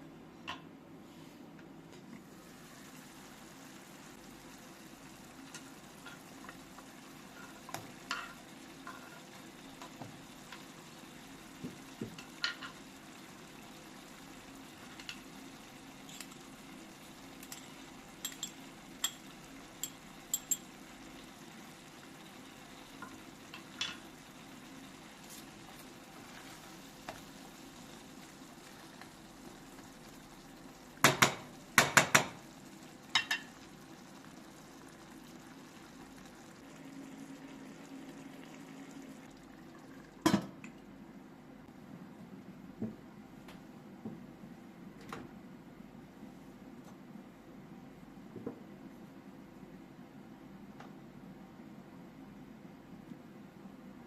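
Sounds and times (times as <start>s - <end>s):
food sizzling in a pan: 2.2s - 40.3s.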